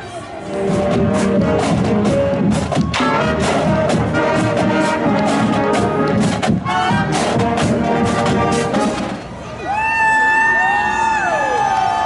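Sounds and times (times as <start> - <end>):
marching brass band: 0.0 - 9.4.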